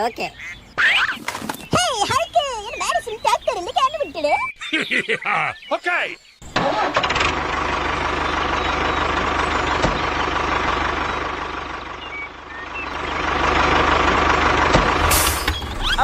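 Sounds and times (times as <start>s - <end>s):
tractor engine knocking: 6.4s - 16.0s.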